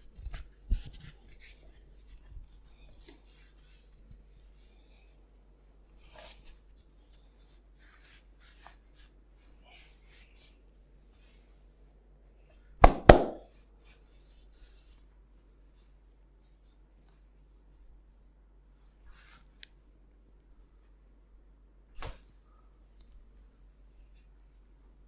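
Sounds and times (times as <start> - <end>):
skin rubbing: 5.7 - 11.6
hand slaps on body: 12.8 - 13.5, 22.0 - 22.3.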